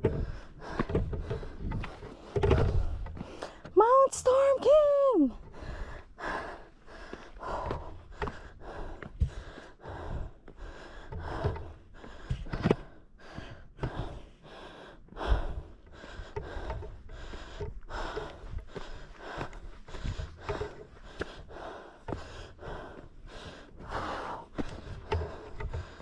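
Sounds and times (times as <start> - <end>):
heavy breathing: 5.4 - 26.0.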